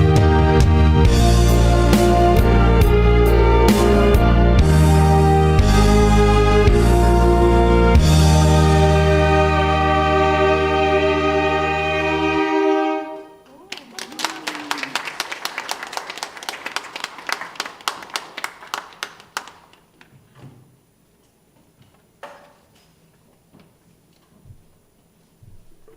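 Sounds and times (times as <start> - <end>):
saxophone ensemble chord: 0.0 - 13.5
audience applauding: 13.5 - 20.1.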